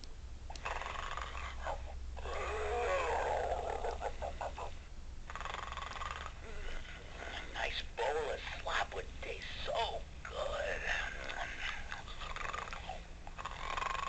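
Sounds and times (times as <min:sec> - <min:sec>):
pig snoring: 0:00.5 - 0:04.7, 0:05.3 - 0:07.7, 0:10.6 - 0:14.0.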